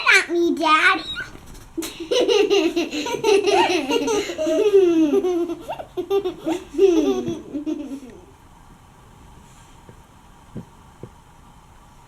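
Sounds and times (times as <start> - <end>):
young girls giggling: 1.8 - 8.4.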